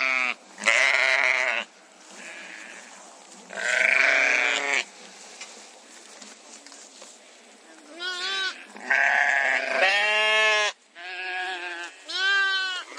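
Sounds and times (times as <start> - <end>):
sheep bleating: 0.0 - 2.9, 3.5 - 4.9, 8.0 - 12.9.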